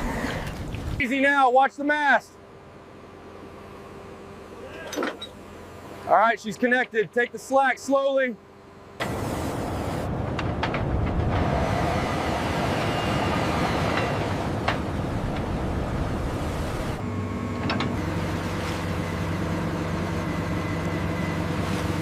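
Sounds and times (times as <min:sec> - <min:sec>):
heavy crane engine running: 0:02.4 - 0:06.2, 0:08.4 - 0:22.0.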